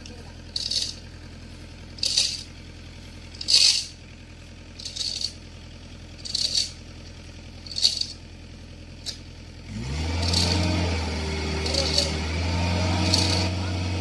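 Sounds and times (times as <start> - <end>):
diesel engine idling: 0.0 - 14.0
short rattling bursts: 0.4 - 9.2, 10.2 - 10.7, 11.6 - 12.2, 13.0 - 13.6.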